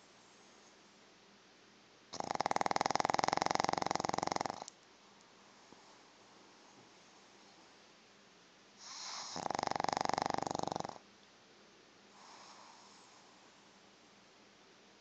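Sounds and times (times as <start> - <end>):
dog snoring: 2.1 - 4.7, 8.8 - 11.0, 12.2 - 13.4.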